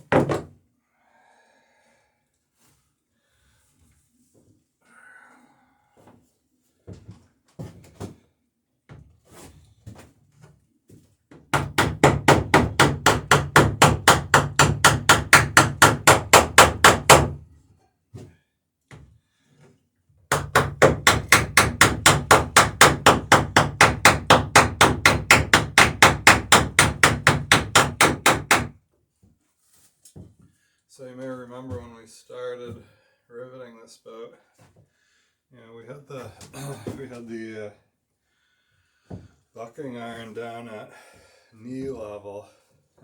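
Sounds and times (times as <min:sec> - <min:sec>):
hammer striking rivets: 0:11.6 - 0:17.4, 0:20.3 - 0:28.7.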